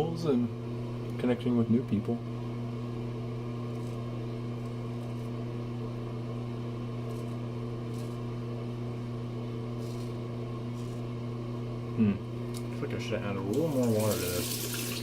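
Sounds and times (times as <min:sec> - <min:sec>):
low electrical hum: 0:00.0 - 0:15.0
razor scraping stubble: 0:07.0 - 0:08.4.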